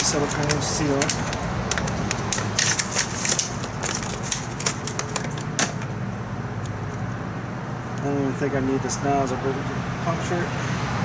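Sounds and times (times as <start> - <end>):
plastic crinkling and clicks: 0.0 - 5.9
steady low hum: 0.0 - 11.0.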